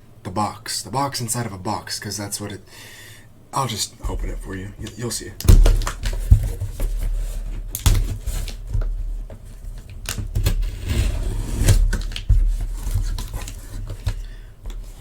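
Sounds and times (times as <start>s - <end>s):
cardboard scraping and rustling: 4.1s - 15.0s.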